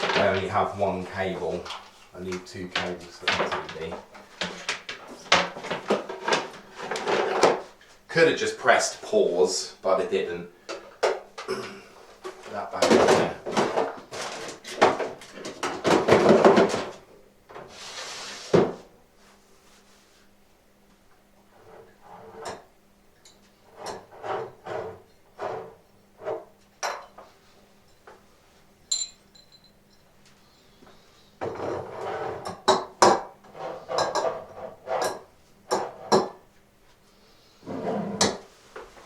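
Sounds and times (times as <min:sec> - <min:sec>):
scraping and rustling: 0:00.0 - 0:08.0, 0:12.2 - 0:20.4, 0:30.4 - 0:32.6, 0:33.4 - 0:36.2
objects knocking and clinking: 0:28.9 - 0:30.1
ringing clink: 0:28.9 - 0:30.1.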